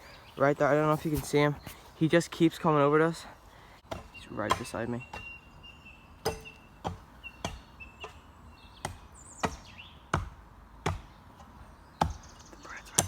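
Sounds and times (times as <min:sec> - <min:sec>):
digging tool chopping soil: 0:08.8 - 0:12.3.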